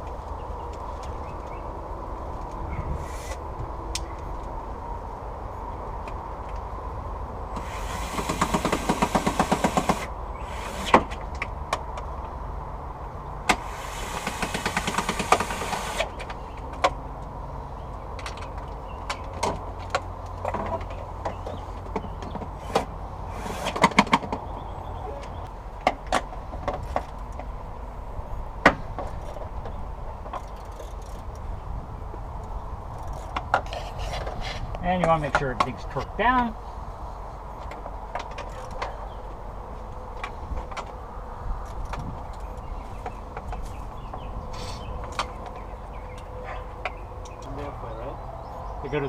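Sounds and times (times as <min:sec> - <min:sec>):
ratchet wrench clicking: 0:30.4 - 0:31.4, 0:32.9 - 0:33.4.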